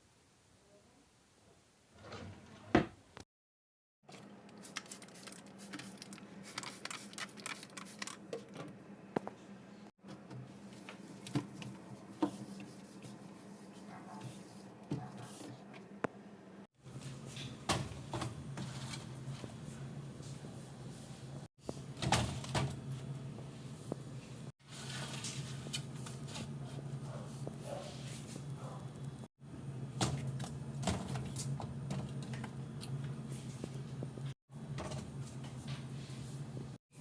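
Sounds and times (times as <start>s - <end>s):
refrigerator shelves clattering: 17.3s - 19.5s, 21.9s - 23.0s, 29.9s - 32.4s.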